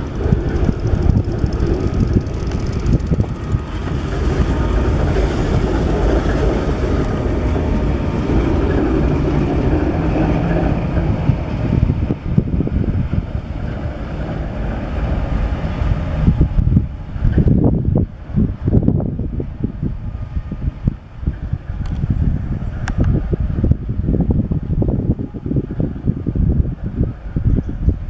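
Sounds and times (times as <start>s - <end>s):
diesel rail engine running: 0.0s - 28.0s.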